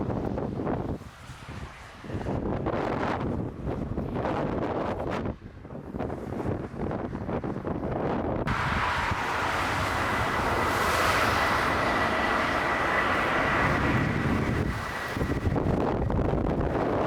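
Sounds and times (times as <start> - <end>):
wind buffeting microphone: 0.0 - 17.0
jet engines roaring: 8.5 - 17.0.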